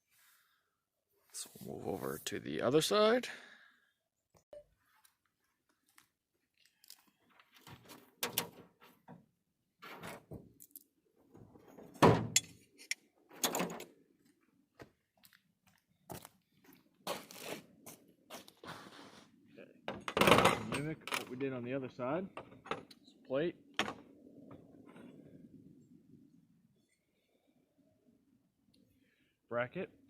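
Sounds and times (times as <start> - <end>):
brackets and tools clinking: 20.0 - 21.4.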